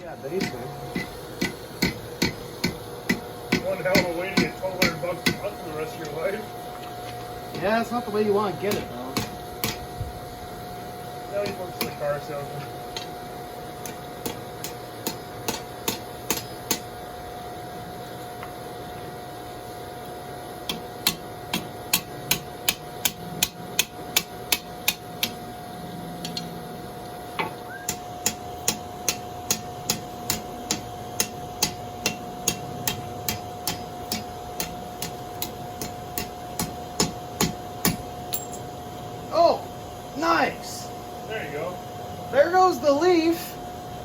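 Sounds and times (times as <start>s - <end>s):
steady high hum: 0.0s - 44.0s
hammer striking steel on anvil: 0.4s - 5.4s, 13.8s - 16.9s, 27.4s - 38.7s.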